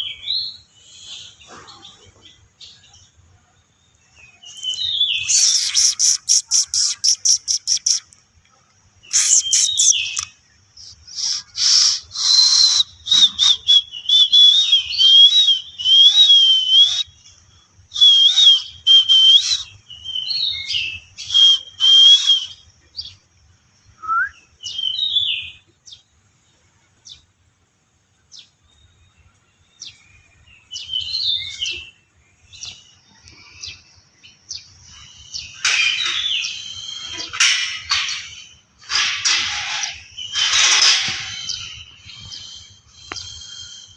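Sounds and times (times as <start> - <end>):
short bird chirps: 4.5 - 8.1, 9.1 - 13.5
harsh bird chattering: 5.2 - 8.2, 9.1 - 12.1
high wavering whistled bird note: 10.9 - 17.1, 18.0 - 22.6.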